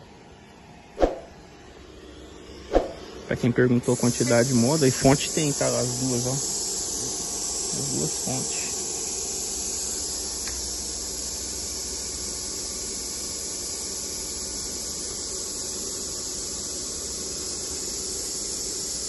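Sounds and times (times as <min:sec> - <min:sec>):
pink noise hiss through speakers: 0:01.5 - 0:19.0.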